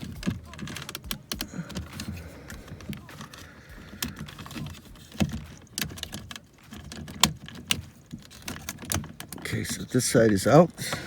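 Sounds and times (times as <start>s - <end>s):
plastic clips clicking and cracking: 0.0s - 11.0s.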